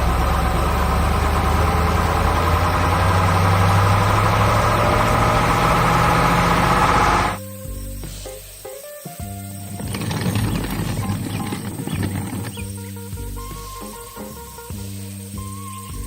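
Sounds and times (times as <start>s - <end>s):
construction machine engine idling: 0.0s - 7.4s.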